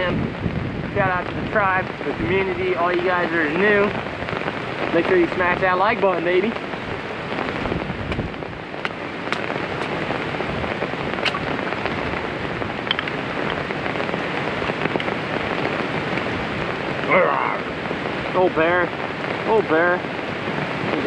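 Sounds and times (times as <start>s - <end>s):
heavy rain falling: 0.0s - 21.0s.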